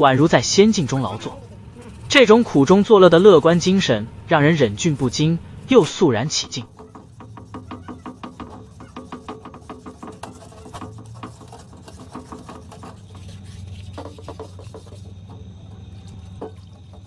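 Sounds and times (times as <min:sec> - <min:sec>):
steady low hum: 0:00.0 - 0:17.0
scraping and rubbing by hand: 0:04.6 - 0:17.0.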